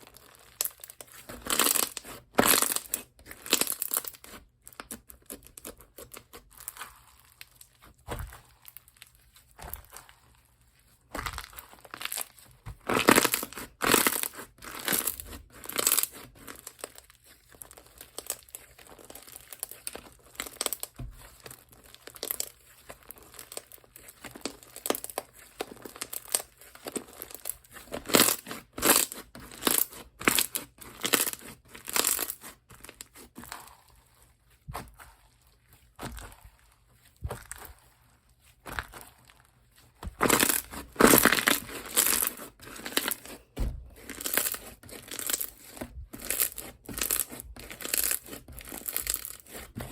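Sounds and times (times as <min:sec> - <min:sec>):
slime crackling and popping: 0:00.0 - 0:10.4, 0:11.1 - 0:49.9.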